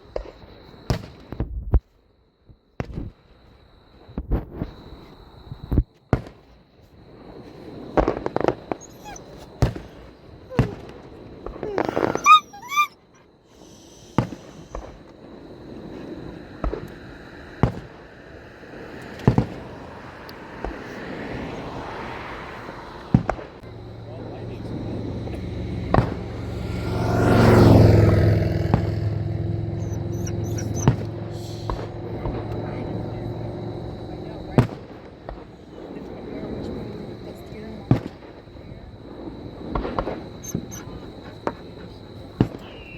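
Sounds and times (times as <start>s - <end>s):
fireworks bangs: 7.7s - 12.7s, 13.6s - 29.8s, 30.6s - 42.9s
fireworks crackling: 13.6s - 29.0s, 30.9s - 42.9s
car passing by: 13.7s - 42.9s
engine hum: 15.2s - 42.9s.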